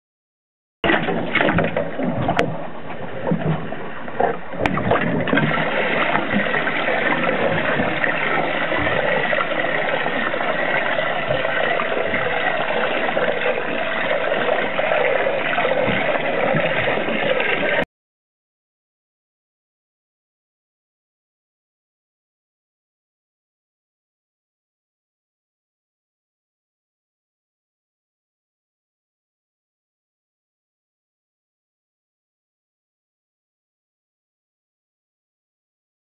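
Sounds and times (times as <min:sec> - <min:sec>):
water churning and gurgling: 0:00.8 - 0:17.9.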